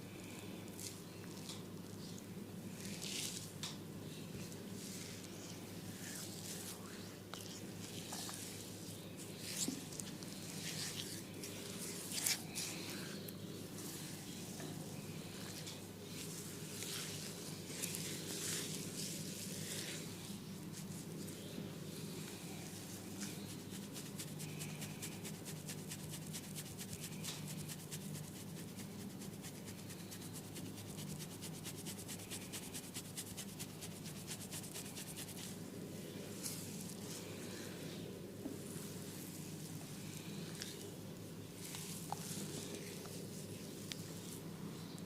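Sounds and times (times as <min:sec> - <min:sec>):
hands rubbing oiled hair: 0:04.8 - 0:13.2, 0:15.4 - 0:21.4, 0:22.7 - 0:35.6.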